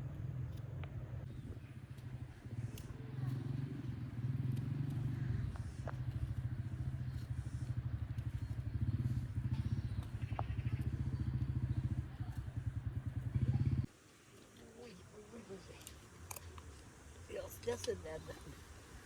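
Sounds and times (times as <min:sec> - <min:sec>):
engine running with low pulse: 0:00.0 - 0:14.0.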